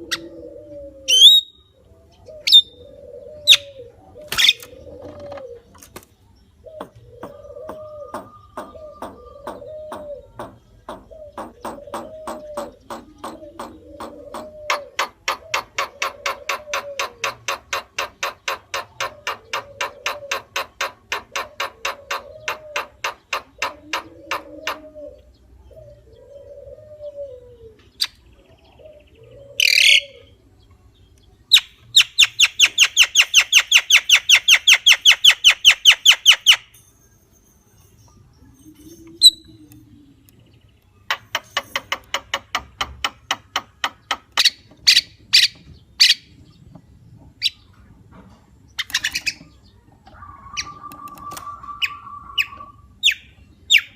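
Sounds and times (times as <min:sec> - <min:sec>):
bird low arched notes: 0:37.9 - 0:53.9.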